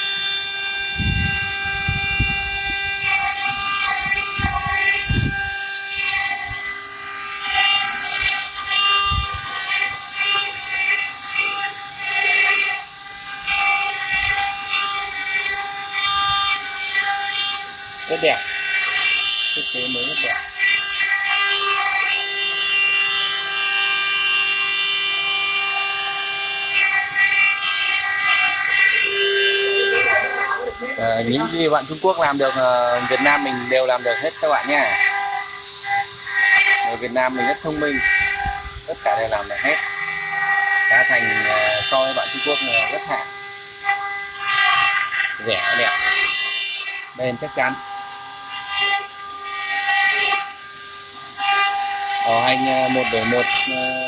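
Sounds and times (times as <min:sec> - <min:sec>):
spindle motors whining: 0:00.0 - 0:54.0
bits grinding stone: 0:25.4 - 0:43.2.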